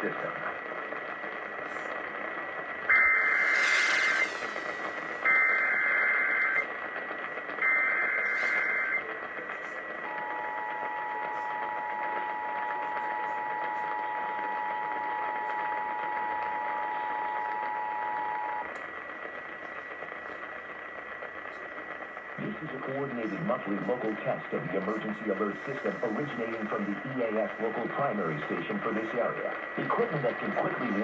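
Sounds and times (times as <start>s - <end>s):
faint high whine: 0.0s - 31.0s
radio hiss: 0.0s - 31.0s
buzzing digital data bursts: 2.9s - 6.6s
two-tone attention signal: 2.9s - 6.6s, 7.6s - 9.0s.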